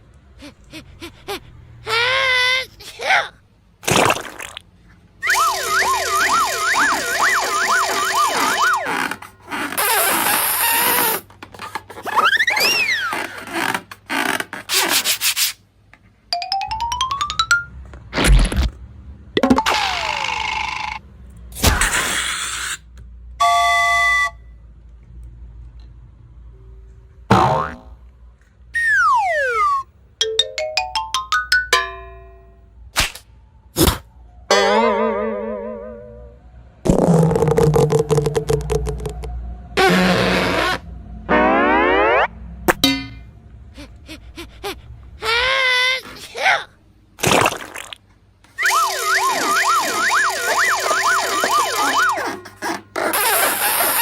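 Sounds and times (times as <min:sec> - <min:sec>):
falling whistle glide: 0:05.2 - 0:08.9, 0:28.8 - 0:29.9, 0:48.6 - 0:52.3
wobbling warbling cartoon tone: 0:05.2 - 0:08.9, 0:19.4 - 0:20.5, 0:28.8 - 0:29.8, 0:34.5 - 0:39.3, 0:41.2 - 0:43.1, 0:48.6 - 0:52.4
rising xylophone notes: 0:16.4 - 0:17.8, 0:28.9 - 0:32.5, 0:41.3 - 0:43.1
swooping tone: 0:34.5 - 0:36.4, 0:37.1 - 0:43.2
rising tone over rapid clicks: 0:41.3 - 0:42.8.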